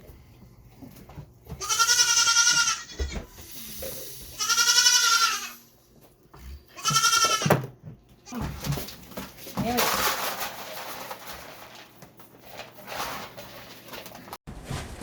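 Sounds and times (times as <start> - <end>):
goat bleating: 1.6 - 3.4, 4.4 - 5.7, 6.6 - 7.5.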